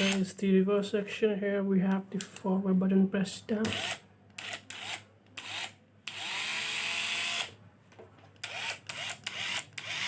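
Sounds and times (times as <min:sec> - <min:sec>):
electric screwdriver motor: 0:03.7 - 0:07.5, 0:08.4 - 0:10.0.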